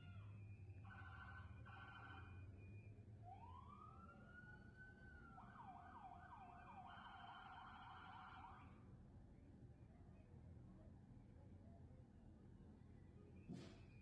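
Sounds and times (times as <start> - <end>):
faint emergency vehicle siren: 0.0 - 9.0.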